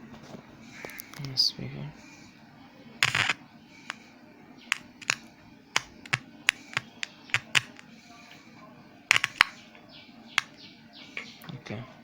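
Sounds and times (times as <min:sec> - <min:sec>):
wires clicking into breadboard: 0:03.0 - 0:04.0, 0:04.7 - 0:08.0, 0:09.1 - 0:09.6.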